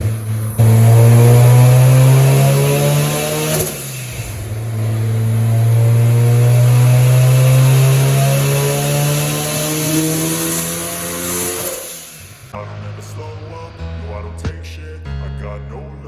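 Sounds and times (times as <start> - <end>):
rotary engine revving: 0.0 - 12.5.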